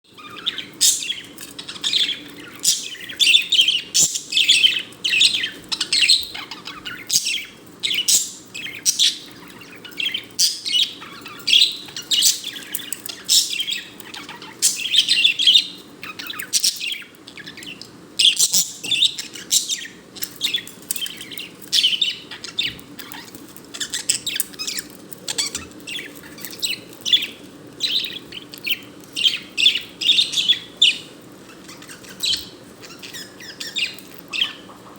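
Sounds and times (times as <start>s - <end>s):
budgerigar chirping and warbling: 29.2s - 34.8s.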